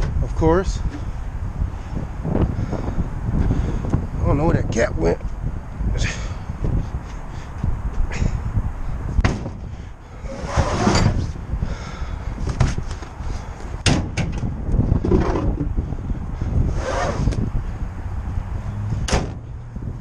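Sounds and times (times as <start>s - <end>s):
scraping: 10.3s - 11.3s.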